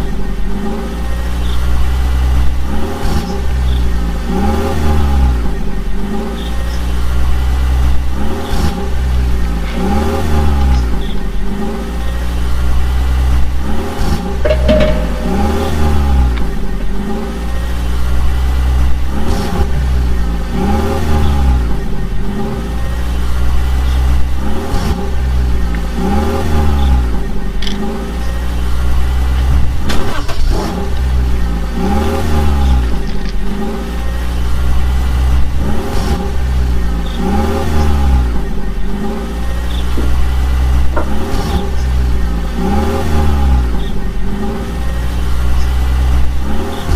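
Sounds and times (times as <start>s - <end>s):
vehicle engine revving: 0.0s - 14.6s, 15.2s - 46.9s.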